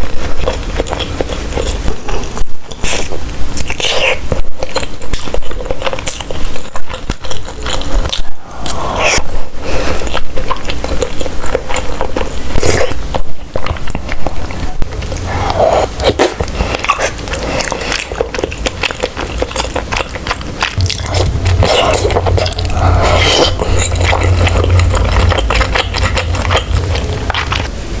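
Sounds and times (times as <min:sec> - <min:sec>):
close chewing with wet smacks: 0:00.0 - 0:28.0.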